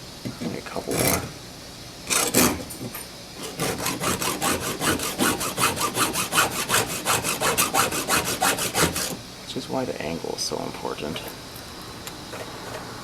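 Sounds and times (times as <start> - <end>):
file rasping on chainsaw chain: 2.1 - 9.2.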